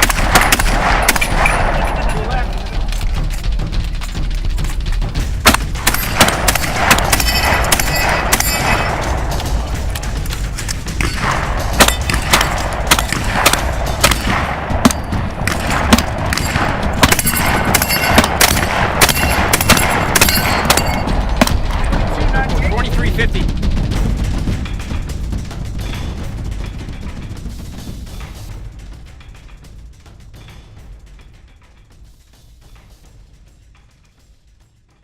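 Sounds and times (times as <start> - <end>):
shotgun shots: 0.0 - 3.0, 5.4 - 22.1
steady low rumble: 0.0 - 34.0.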